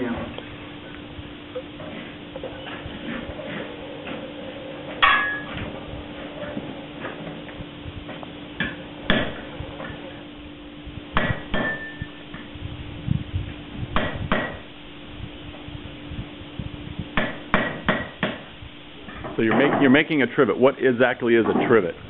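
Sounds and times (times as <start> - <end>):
hammer striking iron on anvil: 5.0 - 5.6, 11.2 - 12.1, 17.2 - 18.4.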